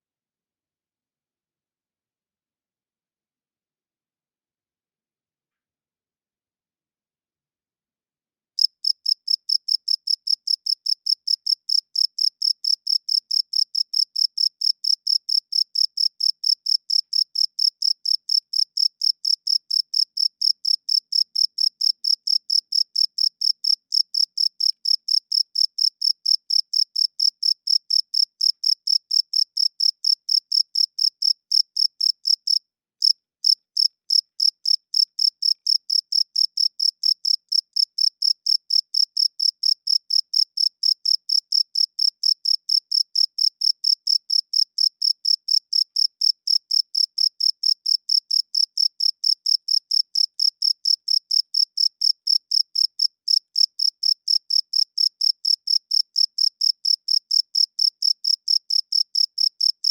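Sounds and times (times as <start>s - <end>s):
cricket chirping: 8.6s - 59.9s.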